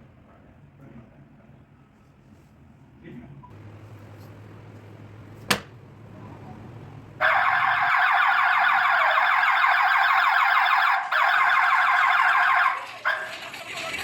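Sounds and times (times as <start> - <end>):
burglar alarm warbling siren: 6.2 - 13.5.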